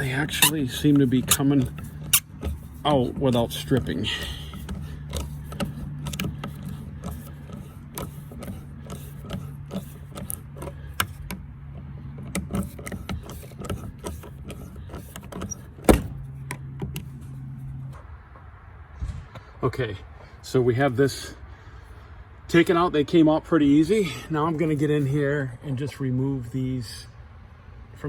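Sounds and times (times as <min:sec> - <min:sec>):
metal parts clicking and rattling: 0:00.0 - 0:15.9.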